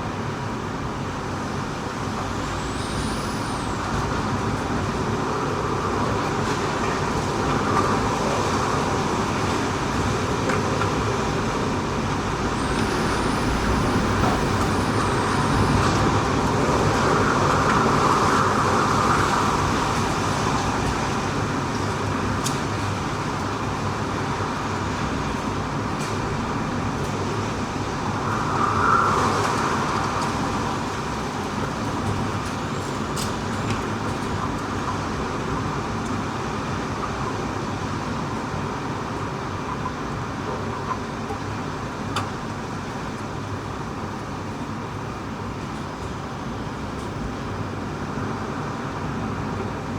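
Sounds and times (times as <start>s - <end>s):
faint high whistle: 2.0s - 6.0s, 12.5s - 19.6s.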